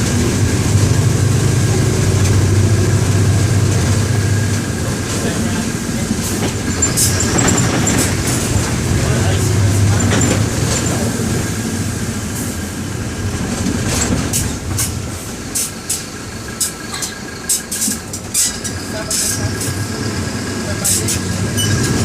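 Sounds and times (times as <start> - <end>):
bus diesel engine drone: 0.0 - 22.0
sharp clicks and rattles: 4.5 - 11.5.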